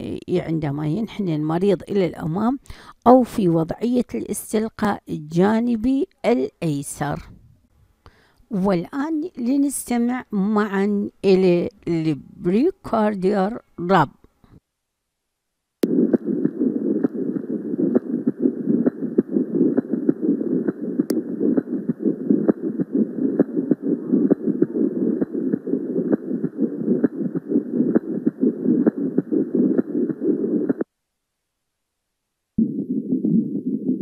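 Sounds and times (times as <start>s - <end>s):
rhythmic heart friction rub: 15.8s - 30.9s, 32.6s - 34.0s
heart sounds: 15.9s - 30.9s, 32.6s - 34.0s.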